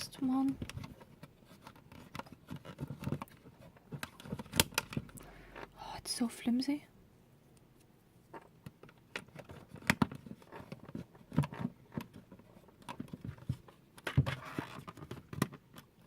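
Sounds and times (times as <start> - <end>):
plastic scraping rub: 0.2 - 5.7, 9.2 - 16.0
plastic clicks and knocks: 0.5 - 5.7, 8.3 - 16.0.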